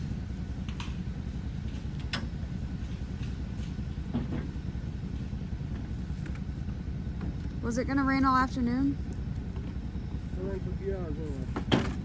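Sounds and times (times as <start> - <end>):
vehicle engine rumbling: 0.0 - 12.0
light knocks or rattles: 1.6 - 4.7, 11.5 - 12.0.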